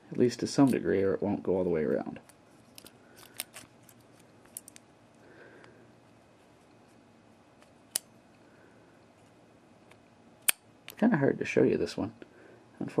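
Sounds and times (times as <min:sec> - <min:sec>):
padlock metallic clicks: 0:02.8 - 0:04.8.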